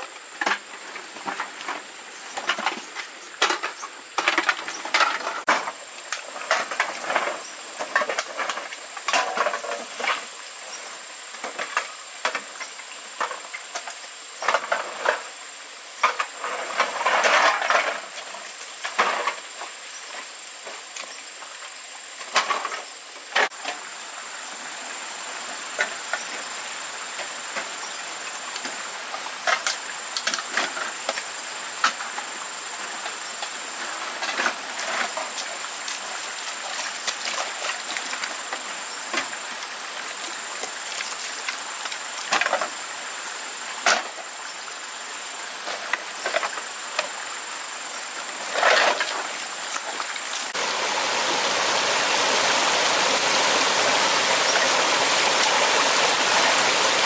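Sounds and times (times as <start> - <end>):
steady hiss: 38.7 - 57.0.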